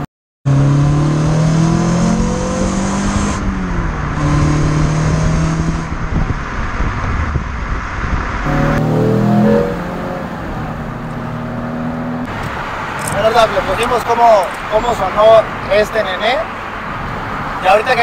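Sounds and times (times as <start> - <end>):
car engine revving: 0.5 - 7.0, 8.3 - 13.8.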